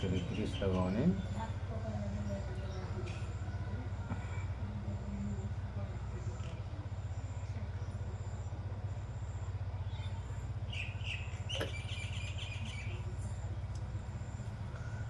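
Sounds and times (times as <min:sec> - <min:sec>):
bird chirping: 0:00.0 - 0:04.5, 0:09.8 - 0:13.7
low hum: 0:00.0 - 0:15.0.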